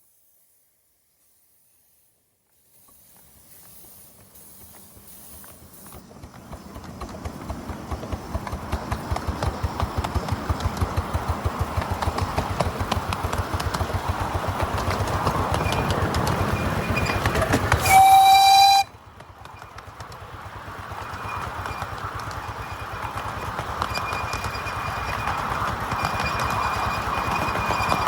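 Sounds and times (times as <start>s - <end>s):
miniature train running: 2.5s - 28.0s
train whistle blast: 17.8s - 18.9s.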